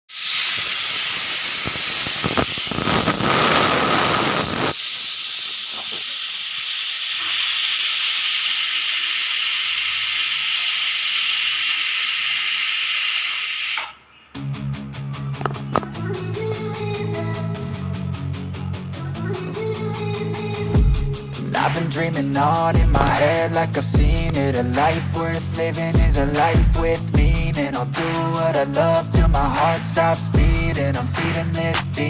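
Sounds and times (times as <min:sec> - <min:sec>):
pressure cooker whistle hissing: 0:00.1 - 0:14.1.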